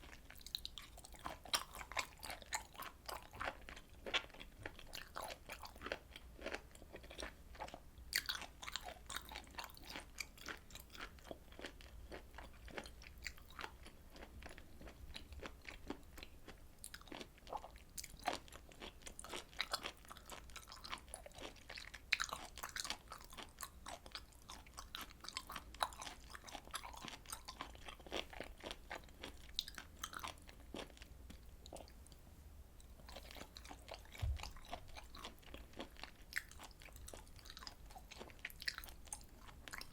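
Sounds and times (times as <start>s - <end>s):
wet crunchy chewing: 16.9s - 31.1s, 33.0s - 39.9s.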